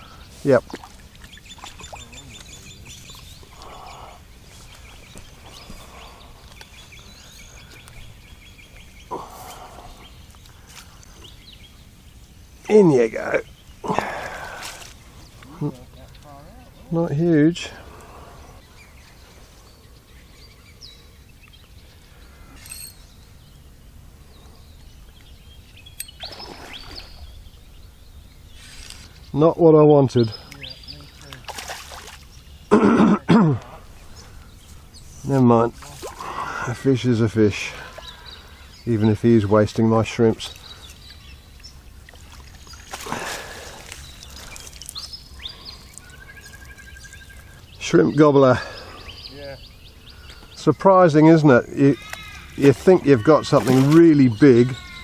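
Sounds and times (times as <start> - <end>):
birds chirping: 0.0 - 55.0
quiet outdoor ambience: 0.0 - 55.0
water splash: 31.3 - 32.3, 52.7 - 54.2
faint high chirps: 44.2 - 47.7.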